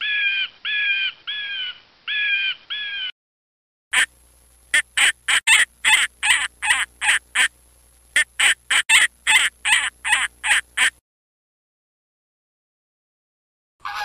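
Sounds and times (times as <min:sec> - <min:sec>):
duck quacking: 0:04.7 - 0:07.5, 0:08.2 - 0:11.0, 0:13.8 - 0:14.0.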